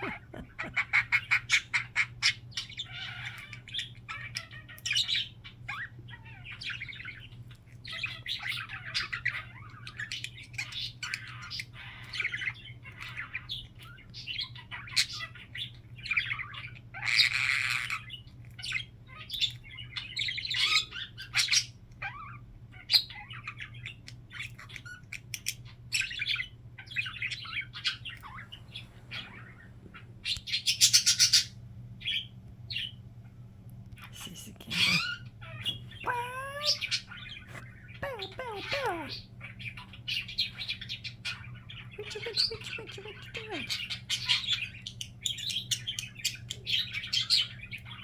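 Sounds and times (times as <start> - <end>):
harsh bird squawk: 0.0 - 2.2, 34.2 - 39.3
budgerigar chirping and chattering: 0.0 - 32.9, 34.1 - 48.0.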